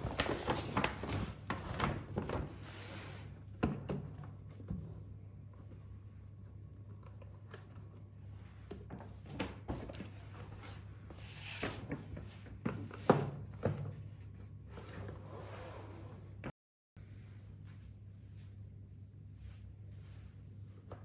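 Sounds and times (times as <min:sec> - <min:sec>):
packaging rustle: 0:00.0 - 0:02.5.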